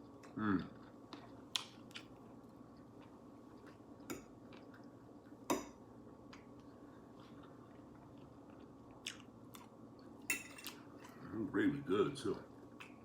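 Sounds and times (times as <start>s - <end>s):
faint steady hum: 0.0s - 13.0s
cutlery clinking on plate: 10.3s - 10.8s.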